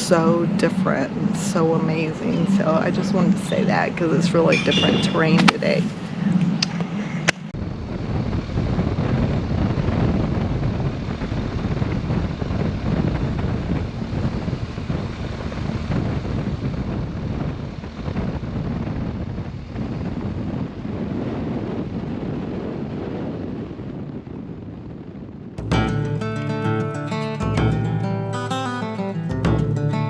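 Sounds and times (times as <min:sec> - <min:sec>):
road noise: 0:00.0 - 0:18.0, 0:25.6 - 0:30.0
wind buffeting microphone: 0:00.0 - 0:30.0.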